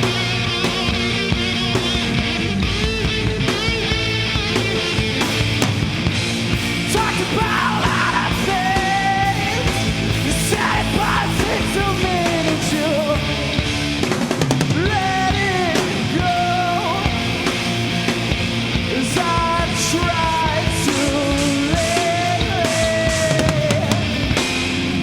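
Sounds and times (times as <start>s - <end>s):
punk rock band playing live: 0.0s - 25.0s
person singing: 6.9s - 13.7s, 14.7s - 17.5s, 18.9s - 24.2s.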